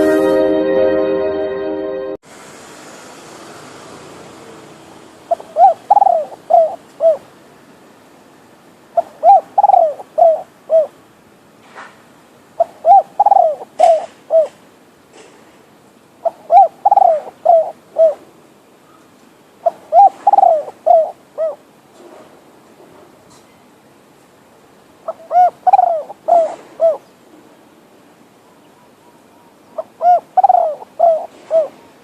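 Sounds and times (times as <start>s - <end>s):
dove cooing: 5.3s - 7.3s, 9.0s - 11.0s, 12.6s - 14.6s, 16.2s - 18.3s, 19.6s - 21.6s, 25.0s - 27.1s, 28.6s - 32.0s.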